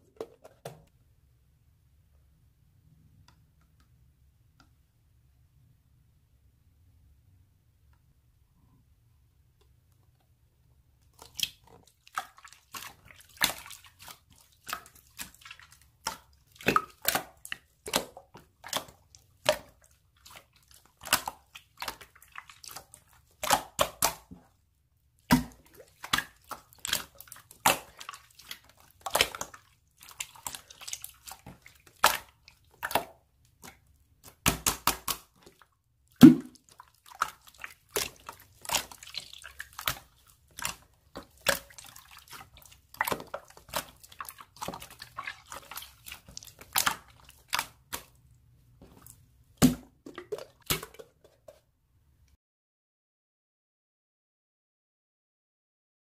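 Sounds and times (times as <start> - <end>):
slime squishing wet pops: 11.1 - 24.5, 25.2 - 35.6, 36.2 - 48.2.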